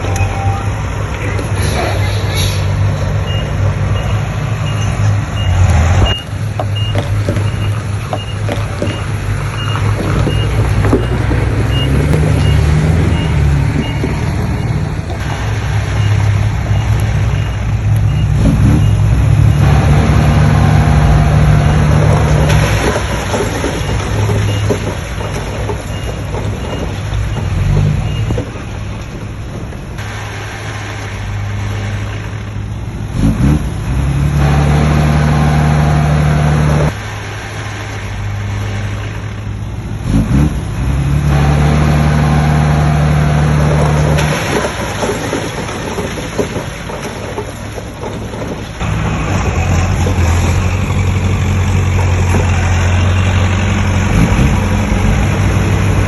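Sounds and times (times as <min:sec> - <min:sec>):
reversing alarm beeping: 0:00.0 - 0:00.8, 0:03.2 - 0:15.2
heavy diesel machinery running: 0:00.0 - 0:56.0.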